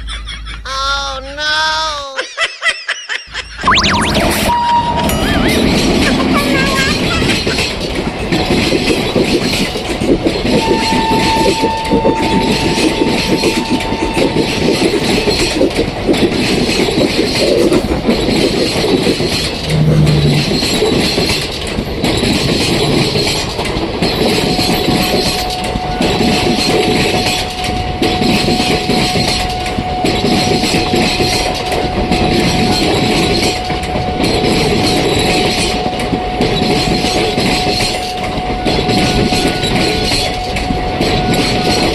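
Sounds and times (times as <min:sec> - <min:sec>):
train wheels clacking on rails: 0:05.0 - 0:41.9
thin squeal-like tone: 0:10.5 - 0:15.6, 0:19.5 - 0:21.0.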